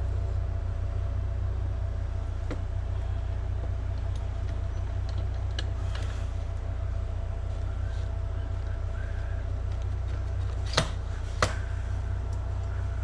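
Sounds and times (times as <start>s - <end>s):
steady low hum: 0.0s - 13.0s
light clicks and taps of small parts: 4.0s - 6.1s.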